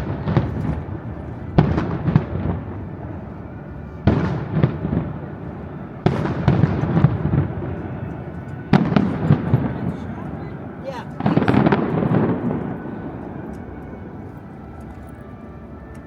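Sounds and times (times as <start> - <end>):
fireworks booming: 0.0 - 3.1, 4.0 - 8.0, 8.7 - 13.4
fireworks crackling: 8.7 - 13.2.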